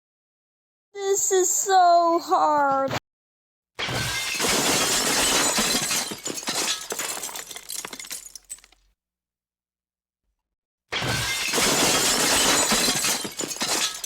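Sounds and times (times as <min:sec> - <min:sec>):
glass shattering: 0:03.8 - 0:08.9, 0:10.9 - 0:14.0.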